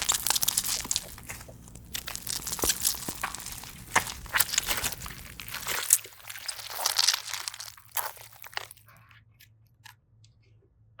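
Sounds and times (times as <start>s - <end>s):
slime crackling pops: 0.0s - 8.8s.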